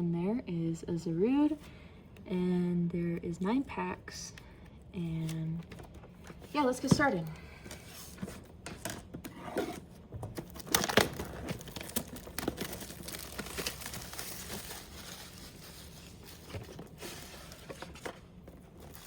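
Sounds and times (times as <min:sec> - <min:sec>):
shrink wrap tearing and crinkling: 0:10.4 - 0:18.0.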